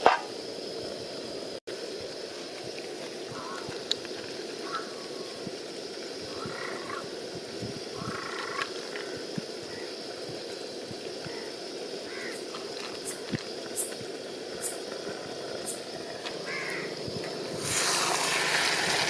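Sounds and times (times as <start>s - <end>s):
frog calls: 3.2s - 4.0s, 4.6s - 5.4s, 6.2s - 7.2s, 7.9s - 10.1s, 11.2s - 14.0s, 14.6s - 17.4s
frog chorus: 3.2s - 5.4s, 6.2s - 7.2s, 7.8s - 10.1s, 11.2s - 14.0s, 14.6s - 17.6s.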